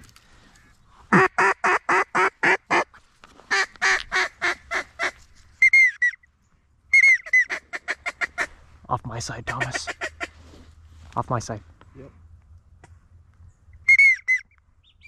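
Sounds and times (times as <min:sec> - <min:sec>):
duck quacking: 0:01.1 - 0:02.9, 0:03.5 - 0:06.2, 0:09.4 - 0:10.4
short whistled calls: 0:05.6 - 0:06.3, 0:13.8 - 0:15.0.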